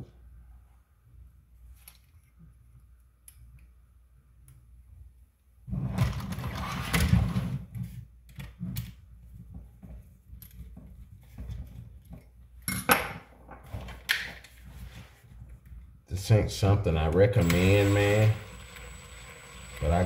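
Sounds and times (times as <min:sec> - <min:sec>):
power driver running: 0:17.3 - 0:20.0.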